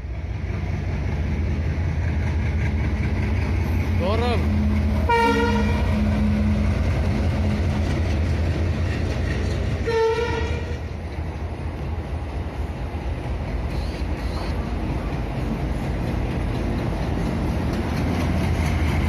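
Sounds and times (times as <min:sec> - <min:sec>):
train rumbling: 0:00.0 - 0:19.0
train horn toot: 0:05.0 - 0:06.1, 0:09.8 - 0:10.8.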